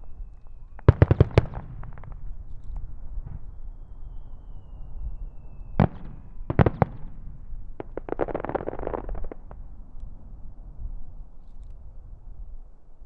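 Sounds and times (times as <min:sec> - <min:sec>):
faint high whistle: 0:03.7 - 0:06.6
rapid crackling pops: 0:07.8 - 0:09.6.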